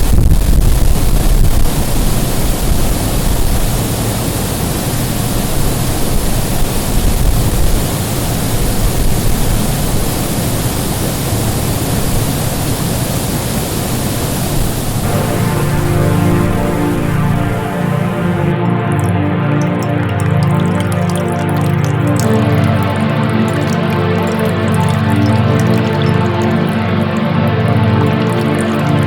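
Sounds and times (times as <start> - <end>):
waterfall roar: 1.0 - 19.1
music with sustained tones: 15.0 - 29.0.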